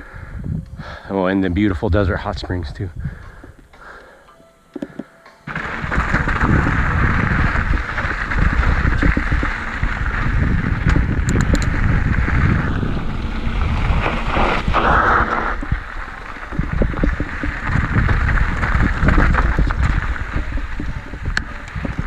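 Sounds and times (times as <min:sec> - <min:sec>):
wind buffeting microphone: 0:00.2 - 0:03.6, 0:05.5 - 0:22.0
bike tyres rolling on dirt: 0:05.5 - 0:22.0.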